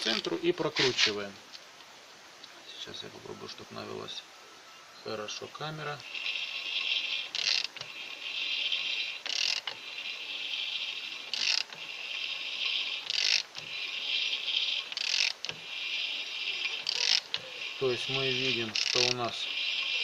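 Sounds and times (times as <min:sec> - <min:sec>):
steady high hiss: 0:00.0 - 0:20.0
brake disc mechanical rasp: 0:06.0 - 0:20.0.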